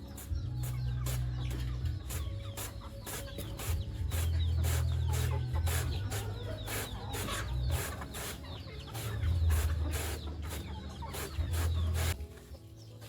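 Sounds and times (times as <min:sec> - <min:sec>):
chickens clucking: 0:00.0 - 0:13.0
blade chopping banana stem: 0:02.1 - 0:12.2.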